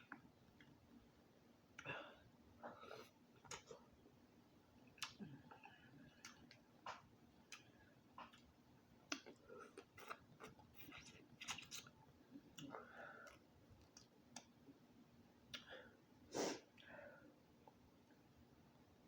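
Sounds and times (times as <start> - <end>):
soft chewing: 0.0 - 0.8, 1.7 - 4.1, 4.8 - 14.8
lip smacks: 4.9 - 8.5, 12.6 - 14.6, 15.5 - 15.7.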